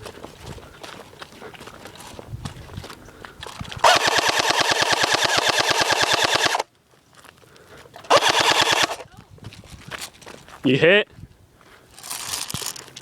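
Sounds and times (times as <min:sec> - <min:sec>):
airsoft gun firing full-auto: 0:03.8 - 0:06.7, 0:08.1 - 0:09.0.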